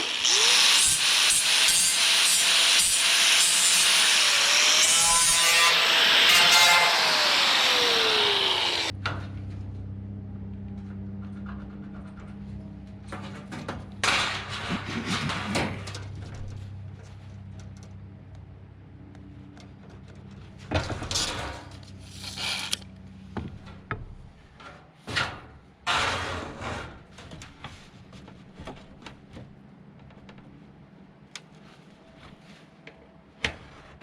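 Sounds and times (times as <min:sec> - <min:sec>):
angle grinder cutting sheet metal: 0:00.0 - 0:08.9, 0:22.0 - 0:22.8
knocks and clatter: 0:10.7 - 0:16.7.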